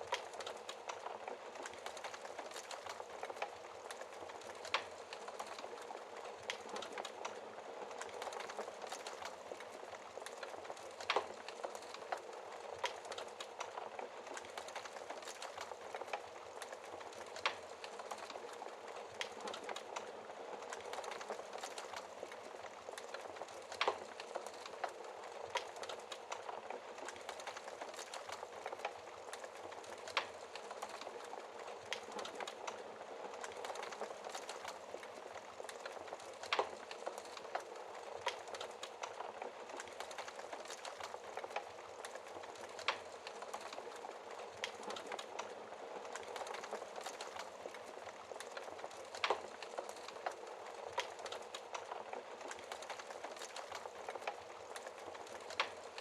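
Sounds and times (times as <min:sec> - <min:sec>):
fire hissing and crackling: 0:00.0 - 0:56.0
fire popping: 0:00.0 - 0:56.0.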